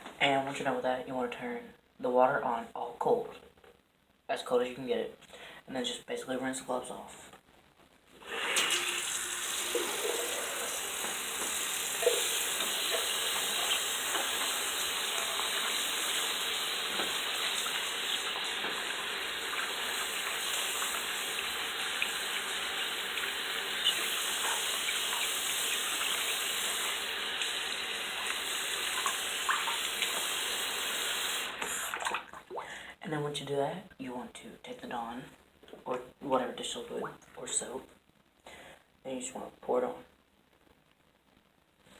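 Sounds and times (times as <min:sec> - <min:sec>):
water running from a tap: 0:08.2 - 0:32.3.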